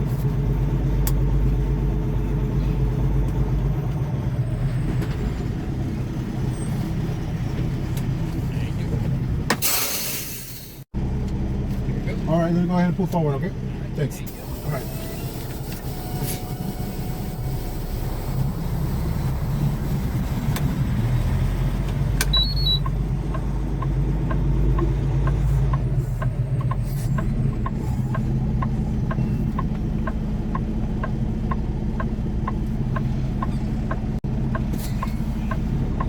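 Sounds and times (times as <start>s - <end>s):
truck diesel engine under load: 0.0s - 36.0s
turn signal ticking: 20.2s - 36.0s.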